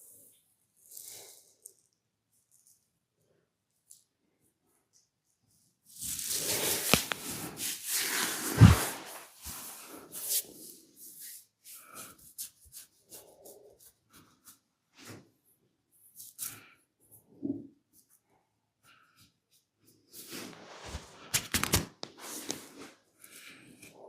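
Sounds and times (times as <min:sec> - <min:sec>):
hands rubbing skin and hair: 0:06.0 - 0:15.2, 0:20.1 - 0:23.6.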